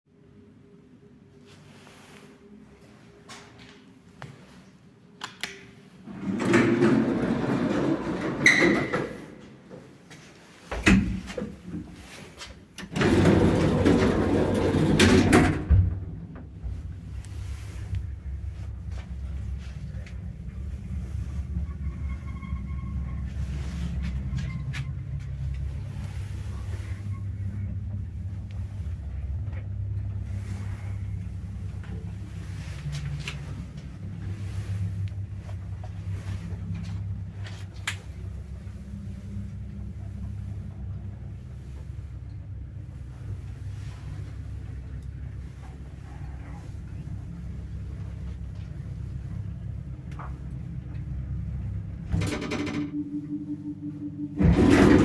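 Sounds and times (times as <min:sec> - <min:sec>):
lift doors creaking scrape: 0:06.0 - 0:09.6, 0:12.0 - 0:29.4, 0:51.1 - 0:55.0.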